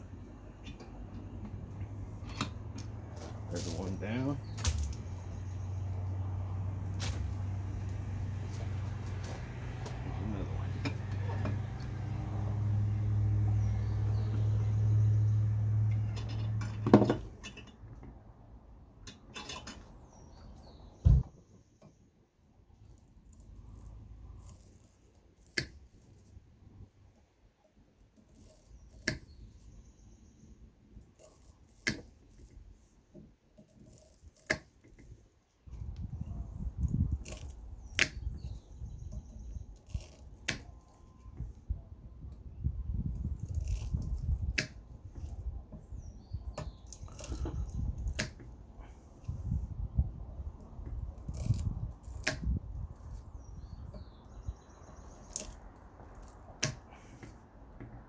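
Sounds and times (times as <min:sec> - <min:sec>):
handling noise: 0:00.2 - 0:05.4, 0:06.8 - 0:12.0, 0:21.0 - 0:21.4
faint handling noise: 0:00.4 - 0:05.3
pliers snipping wire: 0:04.6 - 0:05.1, 0:25.4 - 0:25.9, 0:33.7 - 0:35.2, 0:37.1 - 0:41.1, 0:46.6 - 0:48.5, 0:51.2 - 0:53.3, 0:55.0 - 0:57.4.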